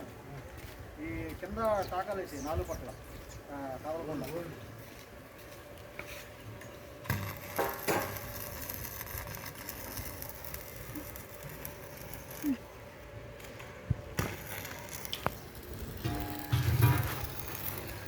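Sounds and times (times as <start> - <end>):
welding arc crackling: 7.0 - 12.8, 13.4 - 18.0.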